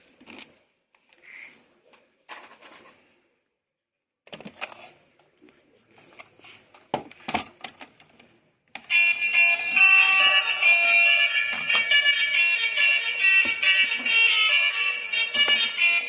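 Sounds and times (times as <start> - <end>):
toy electronic alarm tones: 8.9 - 16.0.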